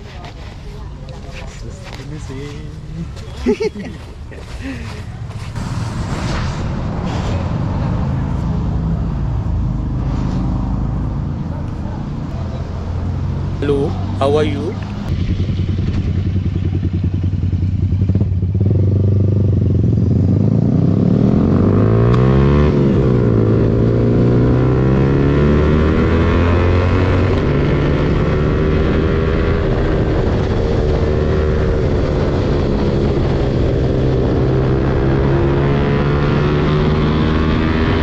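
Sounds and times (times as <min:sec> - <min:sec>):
motorcycle engine accelerating: 0:04.6 - 0:38.0
wind rushing over microphone: 0:27.1 - 0:38.0.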